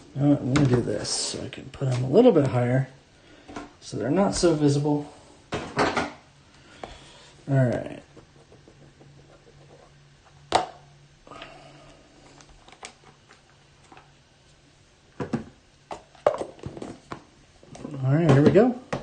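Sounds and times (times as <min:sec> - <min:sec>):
faint low hum: 0:00.0 - 0:19.0
card packs and boxes handled: 0:15.2 - 0:19.0.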